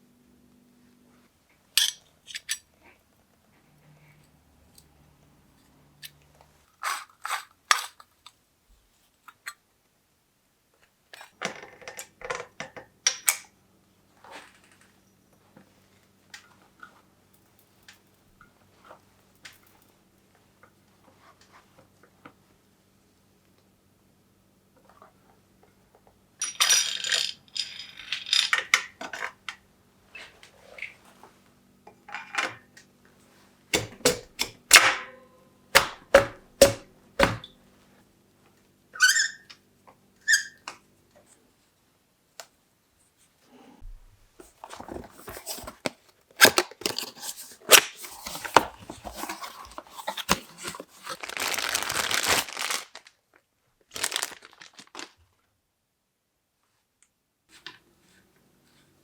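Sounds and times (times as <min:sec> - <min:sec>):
tools rattling and scraping: 0:46.8 - 0:51.2.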